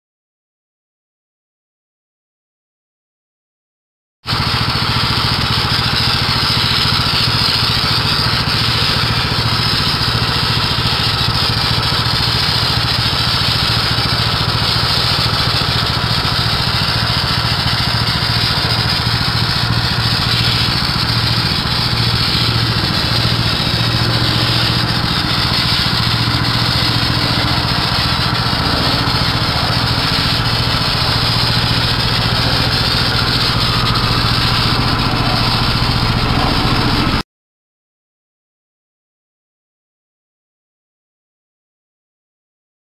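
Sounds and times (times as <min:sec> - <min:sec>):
vehicle engine running steadily: 0:04.3 - 0:37.2.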